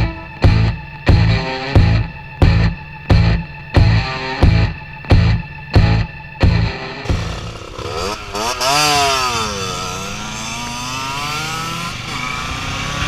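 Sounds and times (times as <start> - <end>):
rock music: 0.0 - 10.6
two-stroke engine revving: 7.0 - 13.0.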